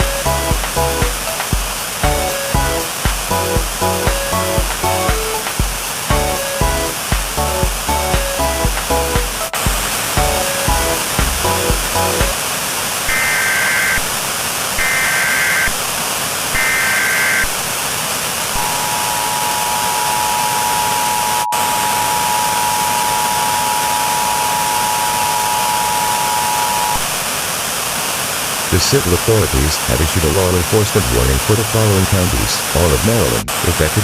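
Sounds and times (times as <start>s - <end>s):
static hiss: 0.0s - 34.0s
two-tone attention signal: 18.6s - 27.0s.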